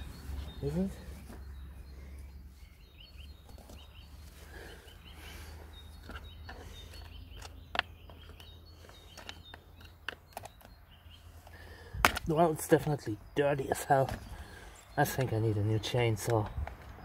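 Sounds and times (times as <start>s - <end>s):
small birds chirping: 0.0s - 17.0s
clicks and taps of parts handled: 6.0s - 10.7s.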